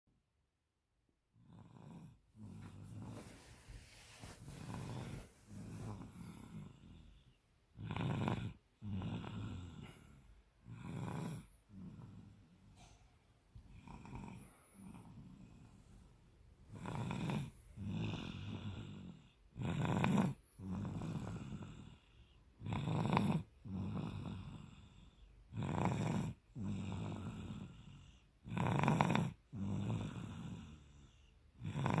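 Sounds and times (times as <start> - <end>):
person snoring: 1.4 - 3.4, 4.2 - 12.8, 13.7 - 15.9, 16.7 - 32.0
soft breath out: 2.4 - 7.5.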